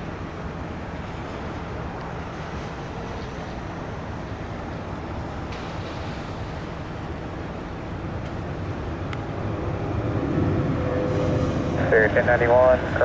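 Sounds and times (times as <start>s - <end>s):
distant jet engines rumbling: 3.5s - 13.0s.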